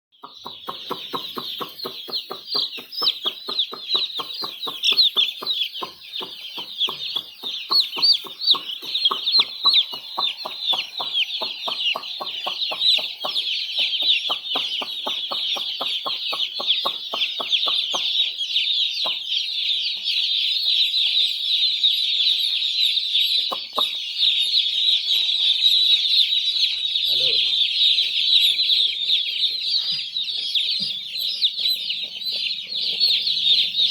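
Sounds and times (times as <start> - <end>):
chicks peeping: 0.1 - 33.9.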